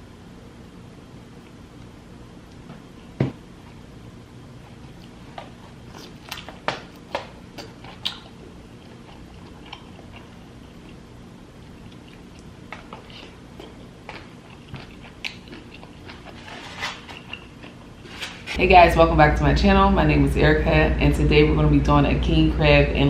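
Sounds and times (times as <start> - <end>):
wet chewing smacks: 4.6 - 17.9.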